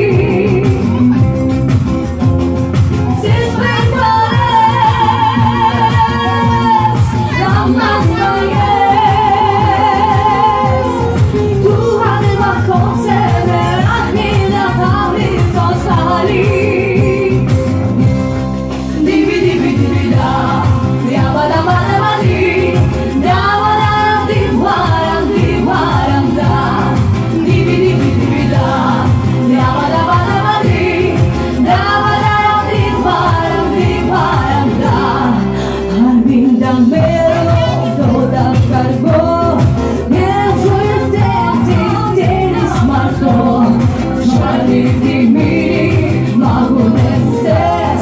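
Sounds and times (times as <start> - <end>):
person singing: 0.0 - 1.4, 3.2 - 17.8, 19.0 - 48.0
musical accompaniment: 0.0 - 48.0
steady bass beat: 0.0 - 48.0.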